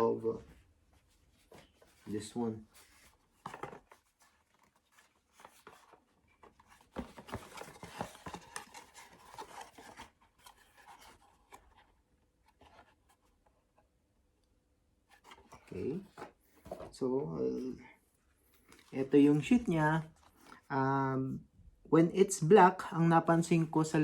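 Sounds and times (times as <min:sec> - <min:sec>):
box and sheath being handled: 0:00.0 - 0:13.9, 0:15.1 - 0:17.0, 0:18.4 - 0:20.7.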